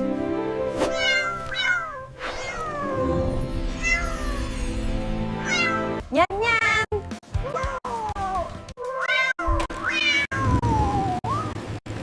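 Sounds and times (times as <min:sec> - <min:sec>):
background music with held tones: 0:00.0 - 0:08.7
cats meowing: 0:00.9 - 0:03.0, 0:03.8 - 0:04.4, 0:05.4 - 0:06.0, 0:07.4 - 0:11.2.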